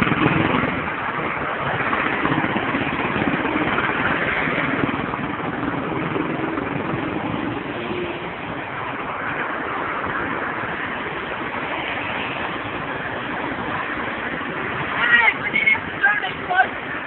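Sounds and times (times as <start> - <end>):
cars driving past: 0.0 - 17.0.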